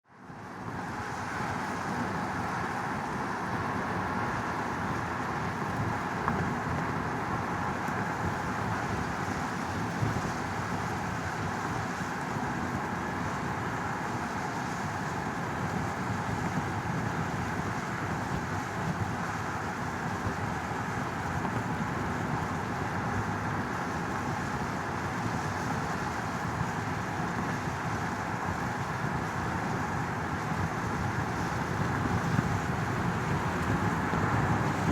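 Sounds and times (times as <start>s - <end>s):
car interior hum: 0.7s - 15.3s, 28.1s - 34.9s.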